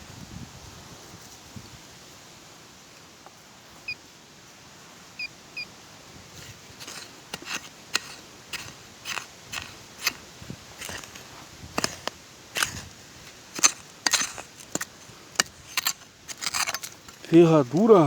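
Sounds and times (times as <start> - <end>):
dry leaves and twigs crunching: 6.3 - 18.0.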